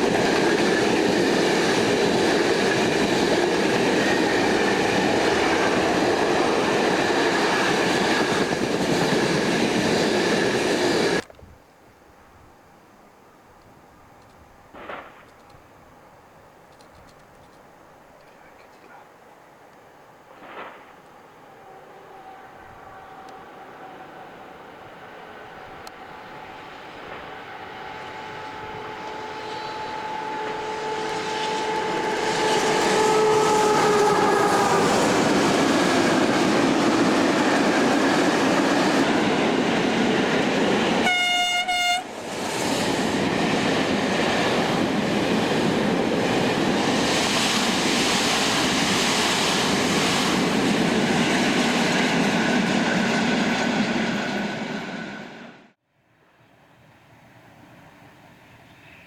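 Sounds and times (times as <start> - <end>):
train wheels rolling on rail: 0.0 - 11.5, 19.7 - 55.8
train horn blast: 21.5 - 35.6, 41.0 - 42.2.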